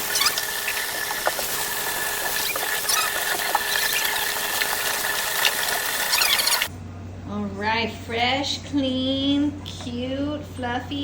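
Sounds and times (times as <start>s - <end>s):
puppies squeaking: 0.0s - 6.7s.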